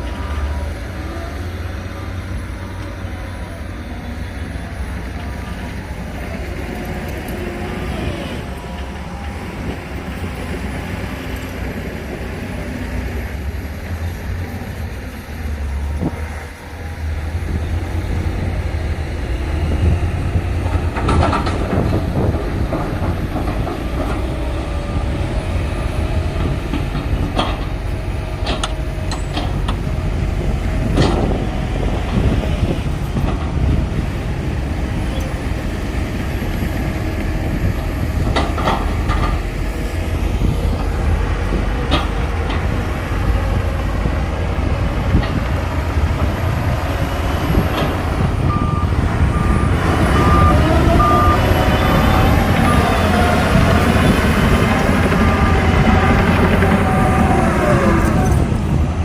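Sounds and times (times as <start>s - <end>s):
bulldozer diesel engine rumble: 0.0s - 59.0s
steel tracks clanking and squealing: 13.9s - 59.0s.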